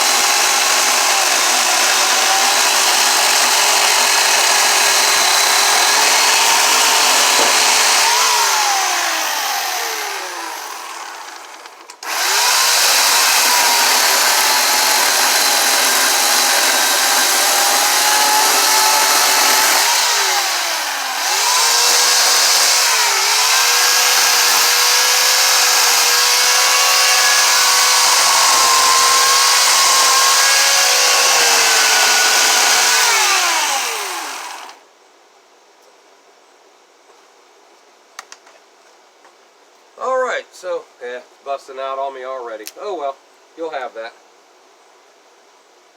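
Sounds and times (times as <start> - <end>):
chainsaw cutting wood: 0.0 - 34.8.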